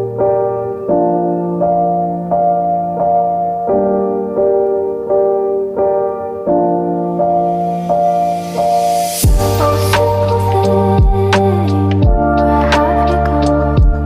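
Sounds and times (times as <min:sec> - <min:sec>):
sustained keyboard chords: 0:00.0 - 0:14.0.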